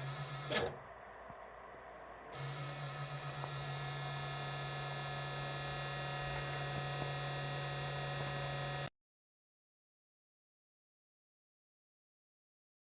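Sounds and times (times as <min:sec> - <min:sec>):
cooling fan humming with grinding: 0:00.0 - 0:08.9.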